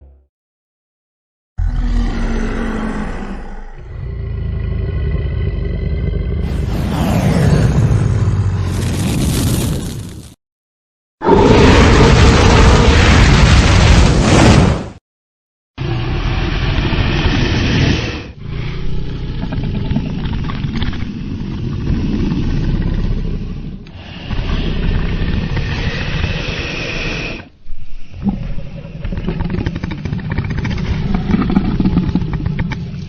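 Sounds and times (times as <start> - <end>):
dragon roaring and growling: 1.6 - 10.1, 11.2 - 14.8, 15.8 - 27.5.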